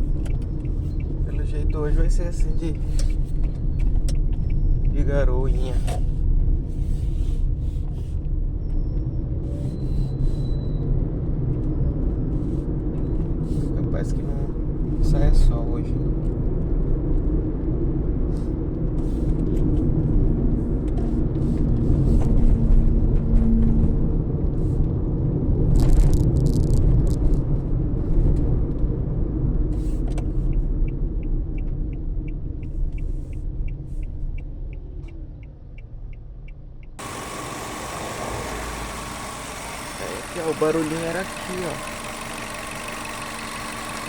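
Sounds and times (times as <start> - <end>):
car engine and tyre rumble: 0.0 - 44.0
light regular ticking: 30.5 - 44.0.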